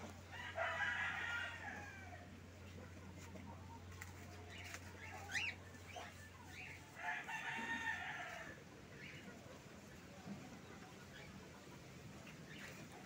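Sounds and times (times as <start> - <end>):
rooster crowing: 0.3 - 2.3, 7.0 - 8.6.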